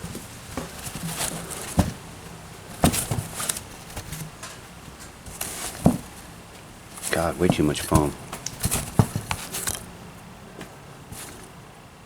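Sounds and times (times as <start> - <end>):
packing foam rustling in a box: 0.0 - 4.3, 5.3 - 9.9, 11.1 - 11.6.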